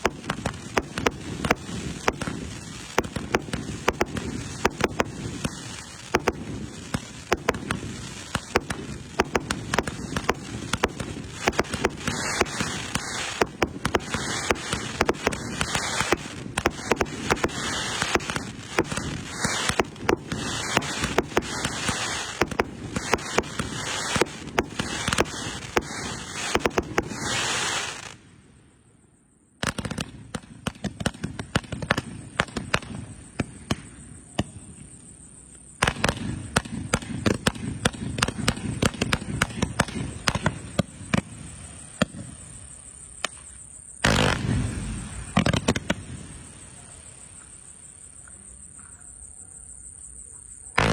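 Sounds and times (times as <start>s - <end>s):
fireworks shots and bursts crackling: 0.0s - 28.5s, 29.6s - 48.6s.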